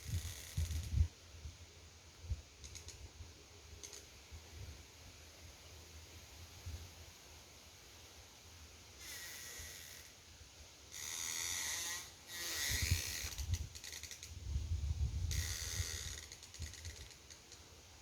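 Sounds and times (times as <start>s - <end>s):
drawn-out creaking: 15.3s - 17.6s.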